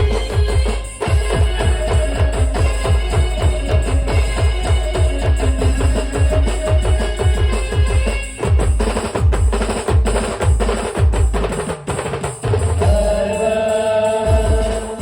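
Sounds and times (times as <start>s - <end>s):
held melody note: 0.0s - 8.5s
heavy drum hits: 0.0s - 13.3s.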